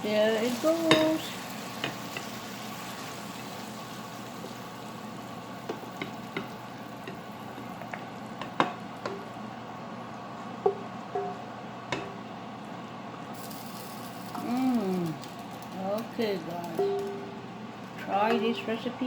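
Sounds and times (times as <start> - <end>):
food sizzling in a pan: 0.0 - 9.9, 13.3 - 18.8
utensil tapping a pan: 0.8 - 1.2, 10.6 - 12.2.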